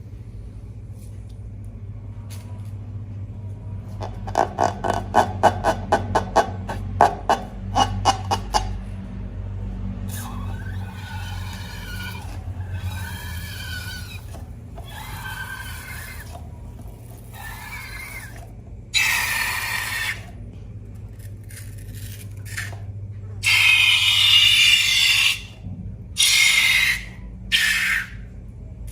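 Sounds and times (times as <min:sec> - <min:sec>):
steady low hum: 0:00.0 - 0:28.9
rubber balloons squealing: 0:10.1 - 0:20.4, 0:23.4 - 0:25.5, 0:26.2 - 0:28.2.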